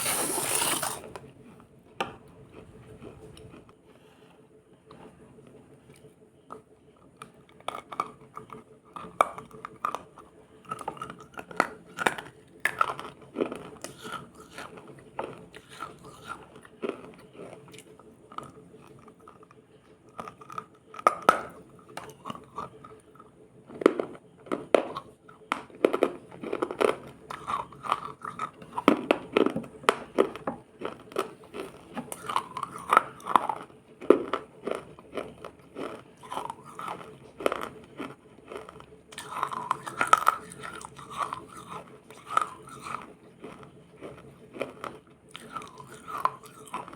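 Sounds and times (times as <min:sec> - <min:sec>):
ice crunching: 0:00.0 - 0:01.1.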